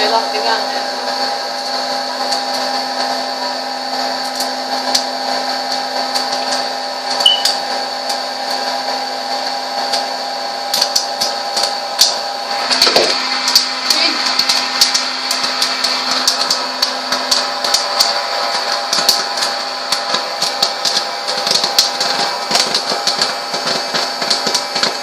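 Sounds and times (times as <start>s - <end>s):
popcorn machine motor hum: 0.0s - 25.0s
popcorn kernels popping: 10.7s - 25.0s.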